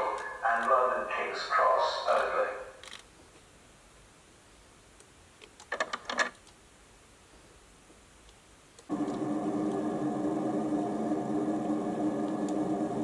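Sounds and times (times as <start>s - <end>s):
steady mechanical hum: 7.1s - 13.0s.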